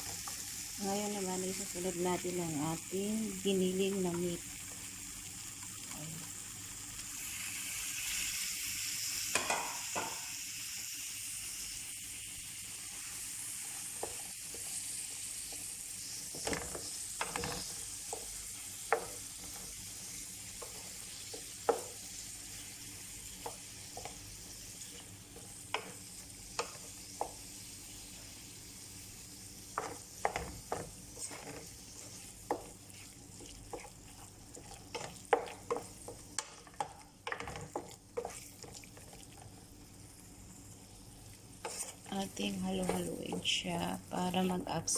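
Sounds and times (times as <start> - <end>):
meat sizzling in a frying pan: 0.0 - 44.9
spatula scraping a pan: 29.8 - 39.4, 41.5 - 43.4.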